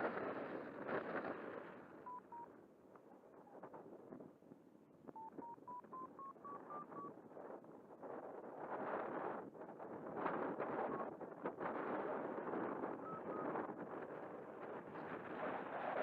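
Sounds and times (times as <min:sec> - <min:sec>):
faint wind rush on microphone: 0:00.0 - 0:16.0
variometer beeps rising in pitch: 0:02.1 - 0:02.5, 0:05.1 - 0:07.1, 0:13.0 - 0:13.5.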